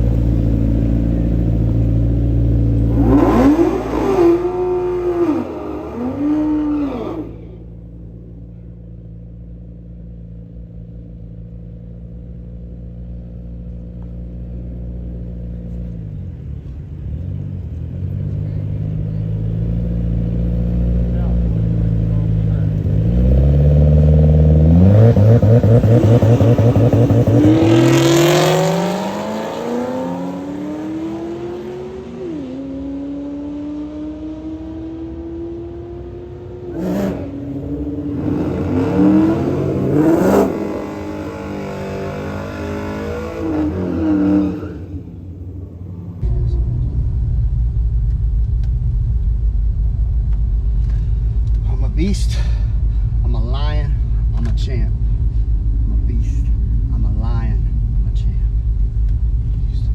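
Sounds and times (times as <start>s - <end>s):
low engine rumble: 0.0s - 6.6s, 7.3s - 31.8s, 44.6s - 59.9s
racing car accelerating: 0.0s - 7.7s, 17.1s - 46.3s.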